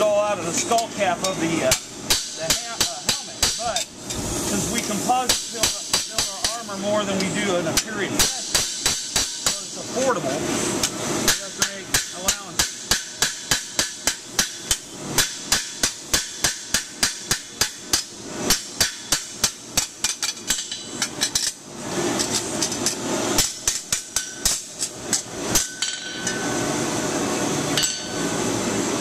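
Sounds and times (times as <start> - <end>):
hammer tapping on sheet steel: 11.3 - 21.1.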